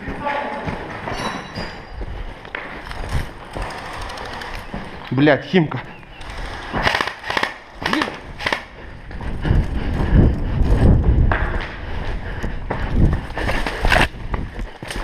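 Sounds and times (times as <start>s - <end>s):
handling noise: 0.4s - 5.3s.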